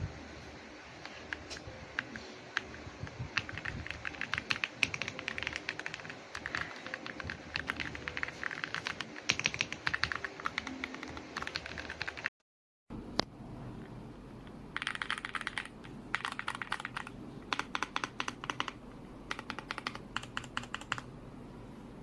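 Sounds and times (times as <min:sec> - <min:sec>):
mechanical keyboard typing: 0:02.0 - 0:12.3, 0:14.8 - 0:21.1.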